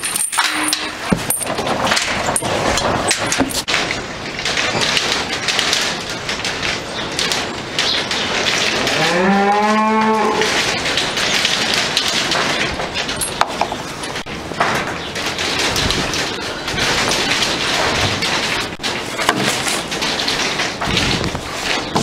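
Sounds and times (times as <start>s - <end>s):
steady rustling noise: 0.0s - 22.0s
cow mooing: 8.8s - 10.5s.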